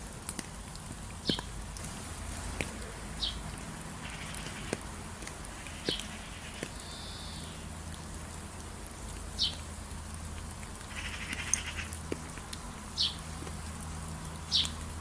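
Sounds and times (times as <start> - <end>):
bird whistle: 6.8 - 7.6.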